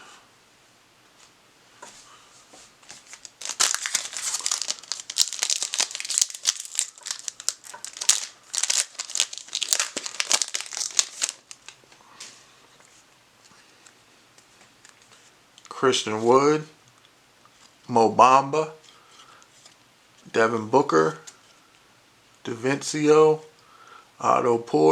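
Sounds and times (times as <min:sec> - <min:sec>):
plastic wrapper crackling: 0:02.9 - 0:11.9.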